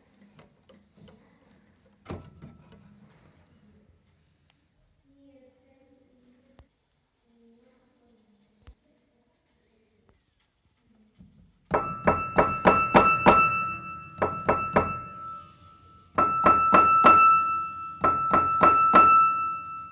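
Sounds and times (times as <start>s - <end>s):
wooden knock of piano keys: 11.7s - 15.4s, 16.2s - 19.9s
piano high repeated notes: 11.7s - 19.9s.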